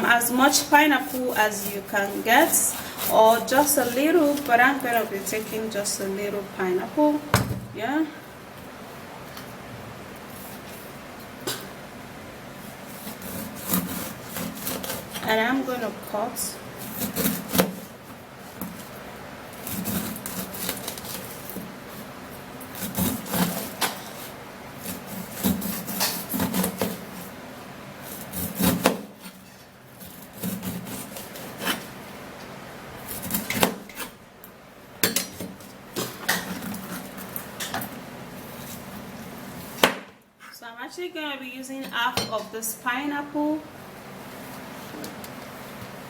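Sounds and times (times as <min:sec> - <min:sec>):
knife sawing through fruit: 0:00.2 - 0:05.8, 0:12.8 - 0:15.4, 0:16.8 - 0:17.8, 0:19.6 - 0:22.1, 0:22.7 - 0:27.3, 0:28.0 - 0:29.4, 0:30.0 - 0:32.0.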